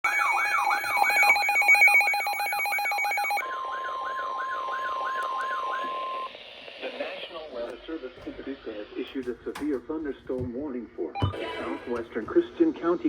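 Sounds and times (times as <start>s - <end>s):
falling siren sweep: 0.0s - 6.6s
fast-pulsing beep: 0.1s - 6.3s.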